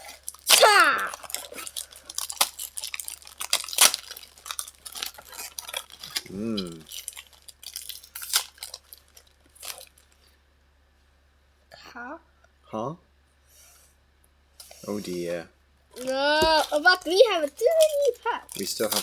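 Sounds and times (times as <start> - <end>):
foil wrapper crinkling and tearing: 0.0 - 10.3, 16.0 - 19.0
person humming: 16.1 - 17.0.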